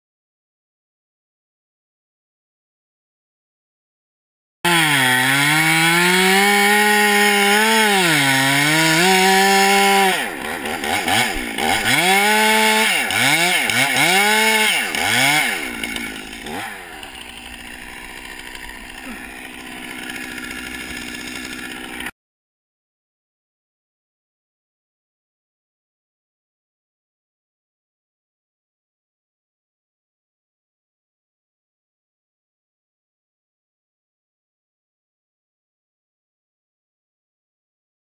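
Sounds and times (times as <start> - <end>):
chainsaw engine revving: 4.7 - 22.1.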